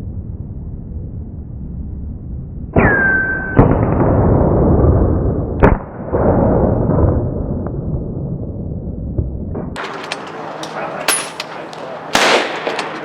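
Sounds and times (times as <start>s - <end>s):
brief whistle-like tone: 2.8s - 3.6s
air rifle reports: 9.8s - 13.0s.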